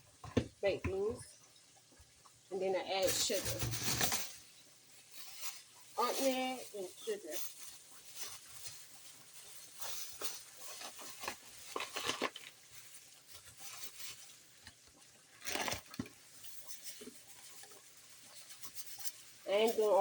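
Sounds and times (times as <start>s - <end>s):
spoon scraping containers: 3.0s - 4.5s, 8.0s - 20.0s.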